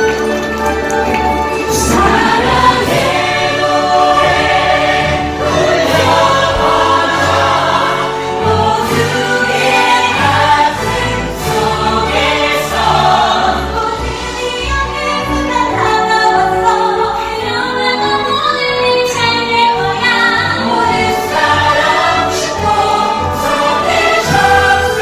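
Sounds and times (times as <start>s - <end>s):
instrumental accompaniment: 0.0s - 25.0s
choir singing: 1.6s - 25.0s.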